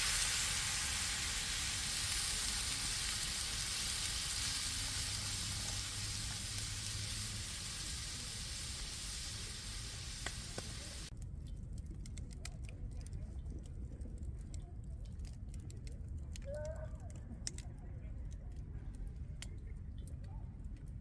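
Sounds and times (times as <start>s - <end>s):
food sizzling in a skillet: 0.0s - 11.1s
small clicks and crackles: 1.0s - 21.0s.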